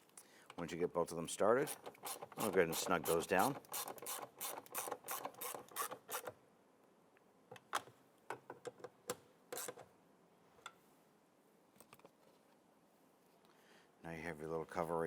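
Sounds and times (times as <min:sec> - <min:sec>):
ratchet clicking: 0:01.7 - 0:06.3.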